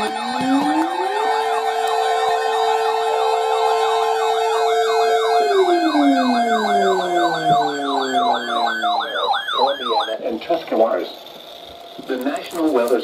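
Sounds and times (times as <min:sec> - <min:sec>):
high siren warble: 0:00.0 - 0:10.2
siren wail: 0:00.0 - 0:10.2
siren yelp: 0:00.0 - 0:10.2.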